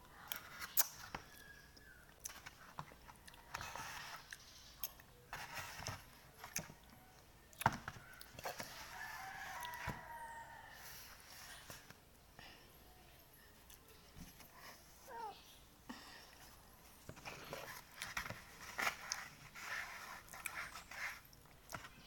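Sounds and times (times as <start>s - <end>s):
rooster crowing: 8.1s - 11.1s.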